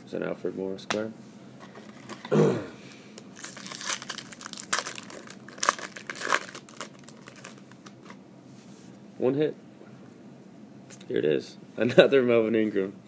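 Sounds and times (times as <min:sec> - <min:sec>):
cards being handled: 0:03.4 - 0:08.2
wrapper crinkling and tearing: 0:03.4 - 0:08.2.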